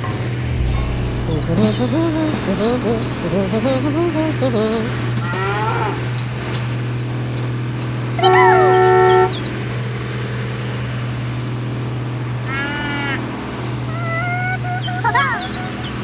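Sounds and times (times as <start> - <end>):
loud horn blast: 0.0 - 6.2
low engine drone: 0.0 - 6.9.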